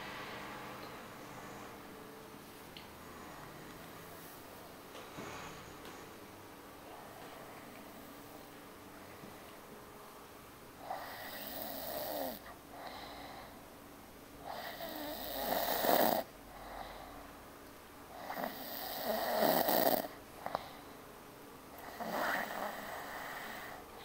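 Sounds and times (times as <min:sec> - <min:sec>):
soft breath out: 0:05.0 - 0:06.2, 0:12.7 - 0:13.6, 0:20.4 - 0:21.0, 0:21.8 - 0:24.0
man snoring: 0:10.8 - 0:13.0, 0:14.4 - 0:16.3, 0:18.2 - 0:20.2, 0:21.8 - 0:23.8.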